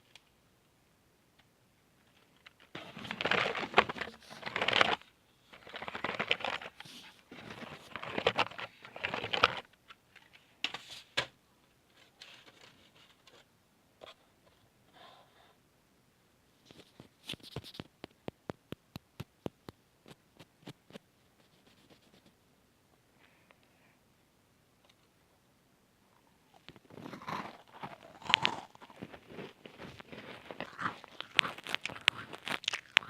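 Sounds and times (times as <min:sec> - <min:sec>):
rustling and crinkling: 0:01.9 - 0:14.7, 0:16.5 - 0:22.5, 0:26.2 - 0:33.0.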